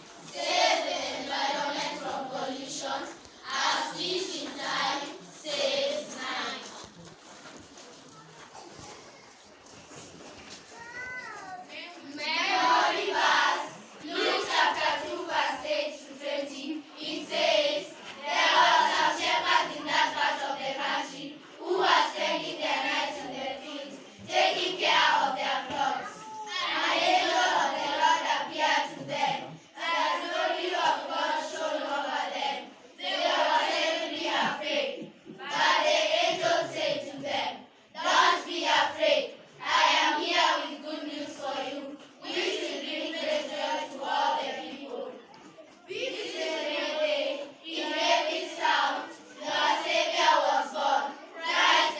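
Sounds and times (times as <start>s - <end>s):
children speaking in unison: 10.6s - 51.9s.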